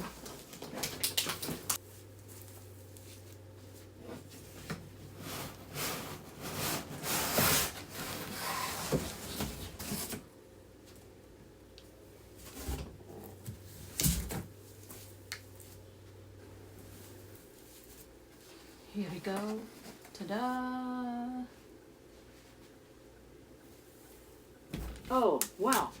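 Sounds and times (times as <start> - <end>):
cardboard rustling and scraping: 0.0 - 10.3, 19.5 - 20.1.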